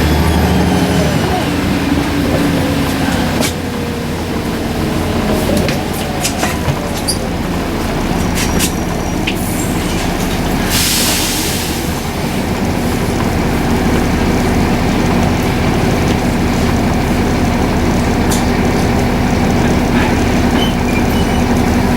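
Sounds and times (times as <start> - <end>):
diesel bus engine running: 0.0 - 21.9
air hiss: 10.6 - 12.1.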